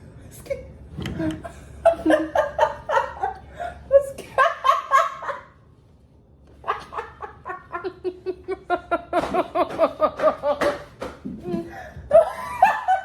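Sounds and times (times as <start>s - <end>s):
girl laughing: 6.6s - 10.6s.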